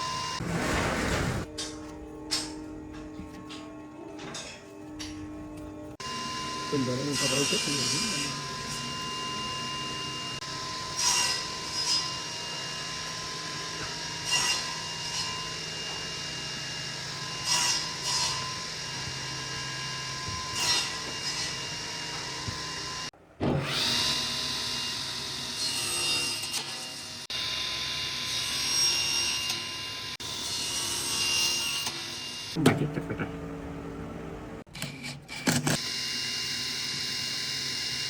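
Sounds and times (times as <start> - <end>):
wood cutting strokes: 6.0 - 9.3
machine hum: 32.6 - 34.7.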